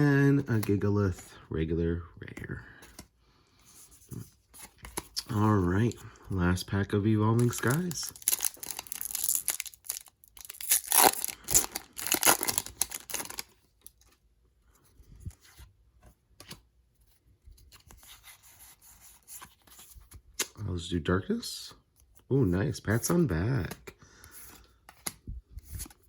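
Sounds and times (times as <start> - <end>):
cards rustling: 0.0 - 1.3, 2.3 - 20.9, 21.8 - 26.0
foil wrapper tearing and crinkling: 7.4 - 13.5.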